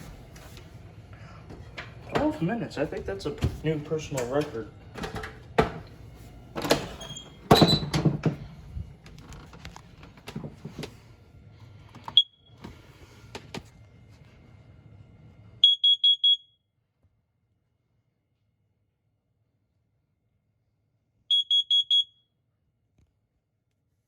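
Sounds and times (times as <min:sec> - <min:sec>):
smoke alarm beeping: 0:12.0 - 0:12.6, 0:15.6 - 0:16.6, 0:21.3 - 0:22.3.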